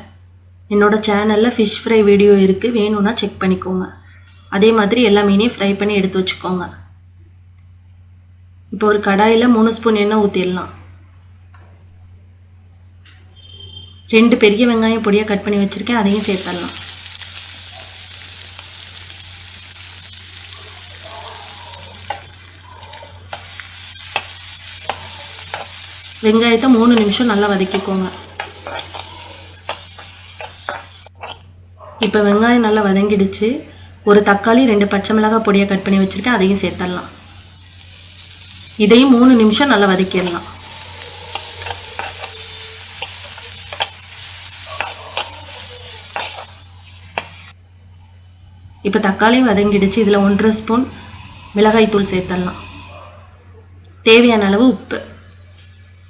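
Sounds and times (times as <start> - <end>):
onions sizzling in oil: 16.0 - 31.2, 35.8 - 47.6, 54.7 - 56.0
spatula scraping a pan: 16.1 - 31.3, 35.8 - 47.5
spoon clicking against pan: 22.0 - 25.9, 44.6 - 46.5.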